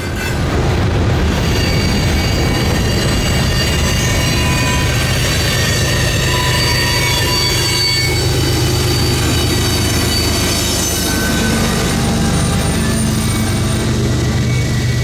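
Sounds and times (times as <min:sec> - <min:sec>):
freight train rolling past: 0:00.0 - 0:15.0
train wheels squealing on rails: 0:00.0 - 0:15.0.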